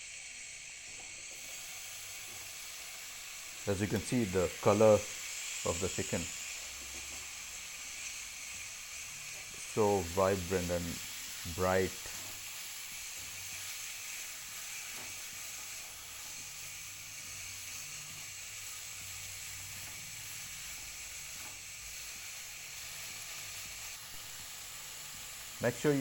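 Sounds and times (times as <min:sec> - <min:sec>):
chicken sizzling in hot oil: 0:00.0 - 0:26.0.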